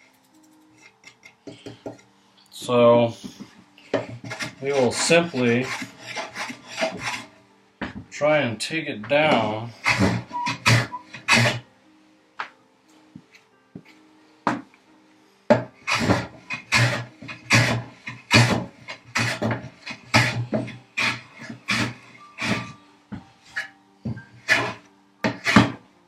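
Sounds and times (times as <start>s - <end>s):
background music: 0.0s - 26.0s
hand plane strokes on wood: 3.4s - 7.4s, 9.2s - 11.6s, 15.5s - 22.8s, 23.4s - 25.8s.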